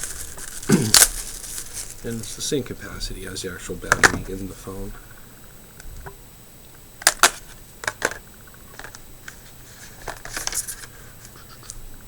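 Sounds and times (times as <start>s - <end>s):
plastic objects clicking: 7.0s - 9.0s.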